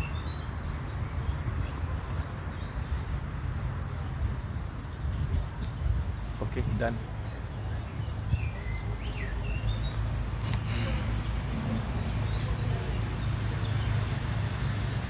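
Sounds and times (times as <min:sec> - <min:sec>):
small birds chirping: 0:00.0 - 0:15.0
low outdoor hum: 0:07.0 - 0:15.0.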